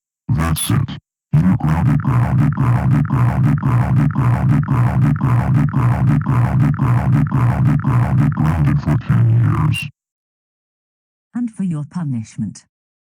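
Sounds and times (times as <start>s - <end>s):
stuttering text-to-speech voice: 0.3s - 9.9s.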